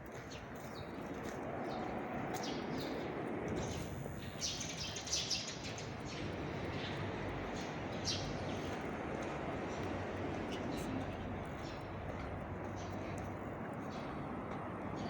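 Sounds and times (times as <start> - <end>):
small birds chirping: 1.7 - 8.9.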